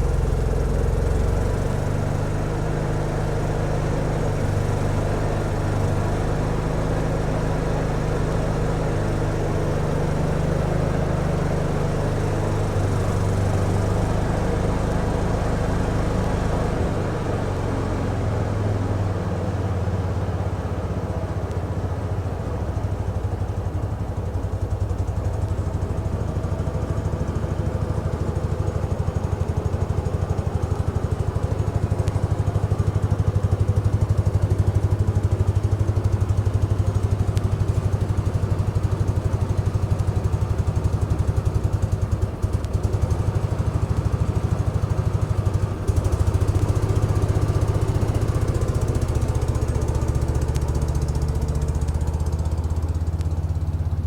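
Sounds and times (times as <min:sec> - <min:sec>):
garden tractor engine running: 0:23.0 - 0:54.0.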